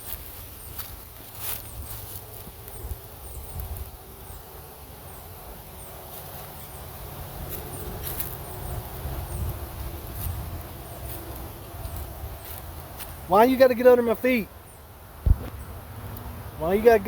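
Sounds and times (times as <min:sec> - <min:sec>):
steady low rumble: 0:15.0 - 0:17.0.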